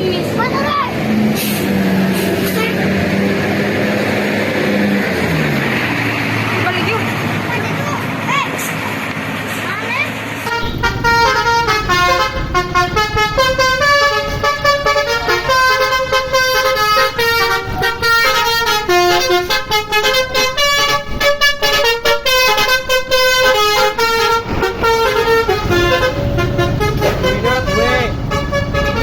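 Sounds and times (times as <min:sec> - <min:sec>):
bus horn playing a tune: 0:01.4 - 0:04.0, 0:10.5 - 0:29.0.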